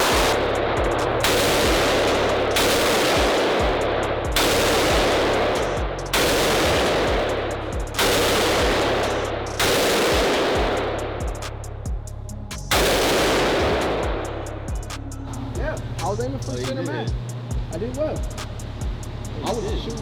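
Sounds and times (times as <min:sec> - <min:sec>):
gunshots reverberating: 0:00.0 - 0:11.7, 0:12.7 - 0:15.0.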